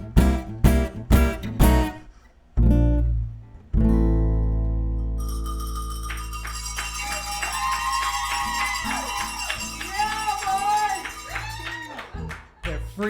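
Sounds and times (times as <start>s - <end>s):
acoustic guitar chord ringing: 0.0s - 3.2s, 3.8s - 11.6s
hand claps: 5.8s - 13.0s
whooping cheers: 6.3s - 12.7s.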